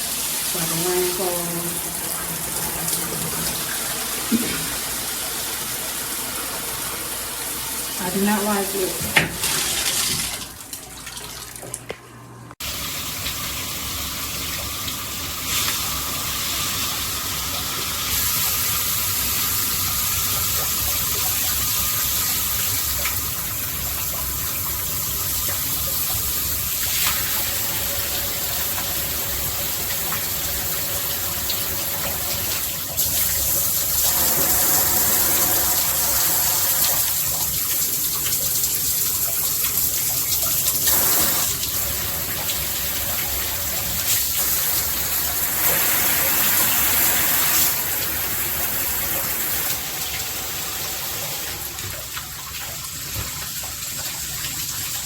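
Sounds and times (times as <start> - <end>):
shower head spraying water: 26.8 - 38.4, 39.5 - 51.7.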